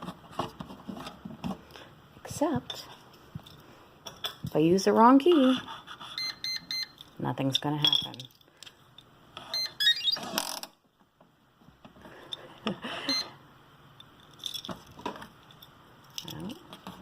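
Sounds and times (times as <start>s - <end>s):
lock key reader beeps: 6.2s - 7.0s.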